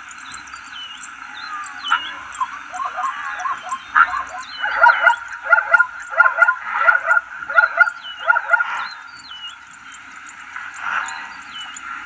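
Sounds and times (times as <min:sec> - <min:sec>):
zebra yelping barks: 0:01.6 - 0:09.0.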